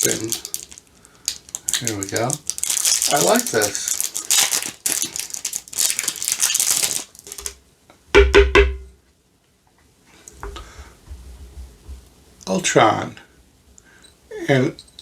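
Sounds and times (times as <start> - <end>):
plastic capsule rattling and crackling: 0.0 - 7.6
metal medallion knocks: 8.2 - 9.0.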